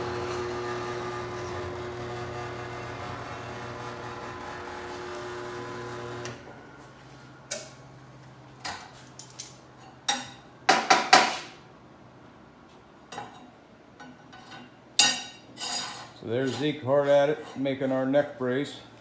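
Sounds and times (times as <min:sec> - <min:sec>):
power tool motor running: 0:00.0 - 0:06.5
metal parts clanking: 0:09.2 - 0:09.6.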